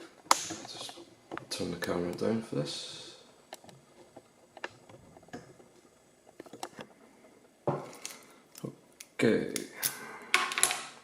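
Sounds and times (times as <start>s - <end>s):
small objects clicking and tapping: 7.8s - 11.0s.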